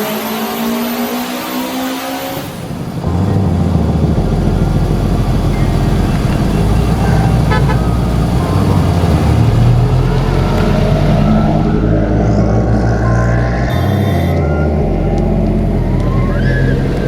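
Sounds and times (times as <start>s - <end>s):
car engine revving: 0.0s - 17.0s
high beeps: 13.7s - 15.2s.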